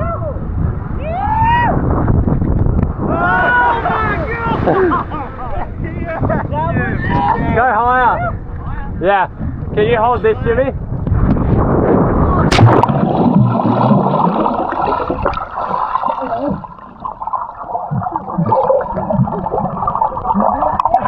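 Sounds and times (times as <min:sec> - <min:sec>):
underwater bubbling and gurgling: 0:11.2 - 0:21.0
splash-like impact: 0:12.5 - 0:16.8.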